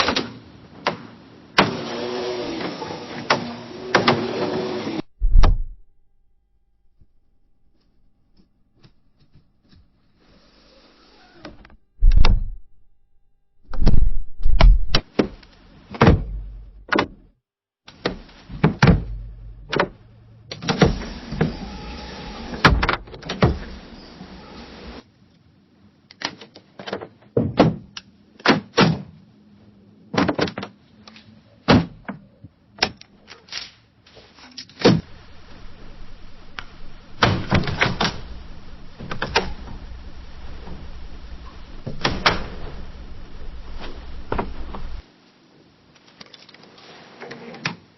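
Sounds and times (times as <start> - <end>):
window scraping slide: 1.7 - 5.6, 35.0 - 45.0.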